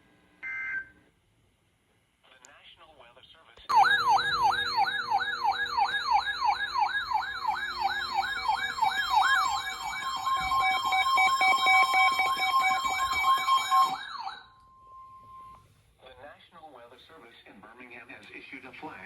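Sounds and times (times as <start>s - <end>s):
electronic siren sweeping up and down: 3.7s - 14.5s
steady high alert tone: 3.7s - 15.6s.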